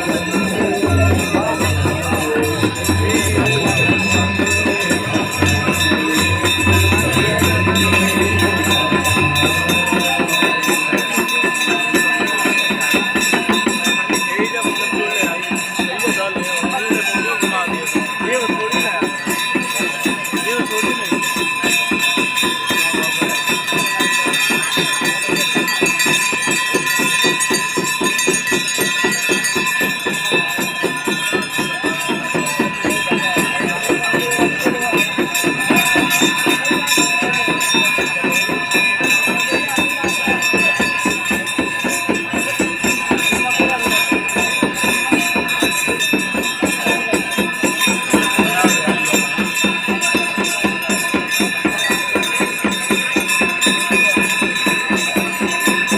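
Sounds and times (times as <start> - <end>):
devotional music: 0.0 - 51.9
temple bells ringing: 0.0 - 55.9.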